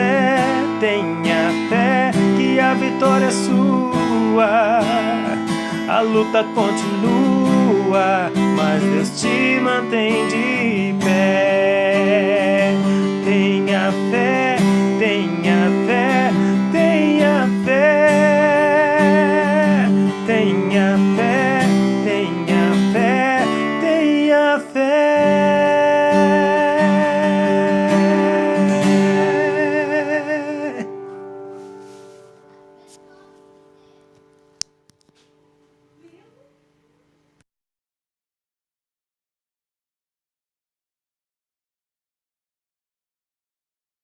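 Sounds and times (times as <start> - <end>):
wordless sung melody: 0.0 - 34.1
acoustic guitar chords: 0.0 - 35.9.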